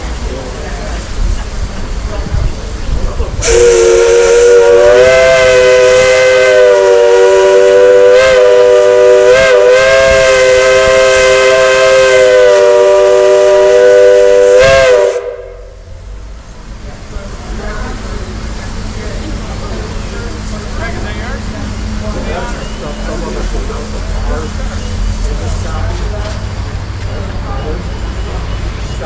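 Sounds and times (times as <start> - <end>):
steam locomotive whistle: 3.4 - 15.8.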